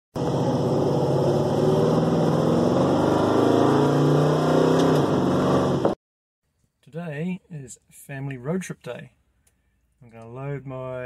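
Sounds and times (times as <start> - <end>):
car engine under throttle: 0.2 - 6.0.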